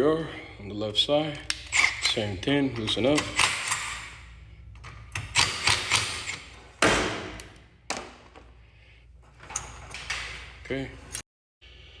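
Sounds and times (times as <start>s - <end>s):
wrench knocking and clicking on bolts: 2.8s - 4.1s, 5.1s - 6.4s.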